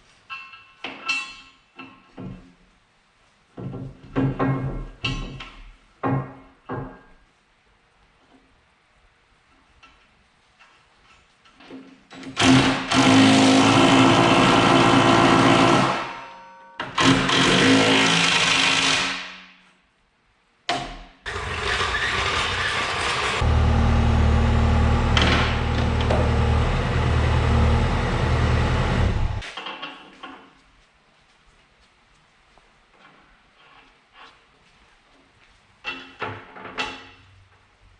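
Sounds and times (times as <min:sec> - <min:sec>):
motor running: 0:23.2 - 0:29.4.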